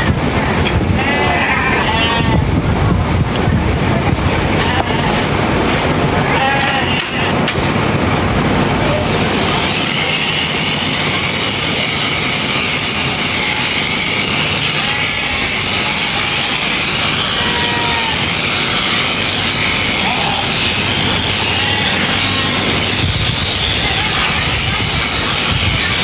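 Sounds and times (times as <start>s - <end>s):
electric shearing handpiece buzzing: 8.8s - 26.0s.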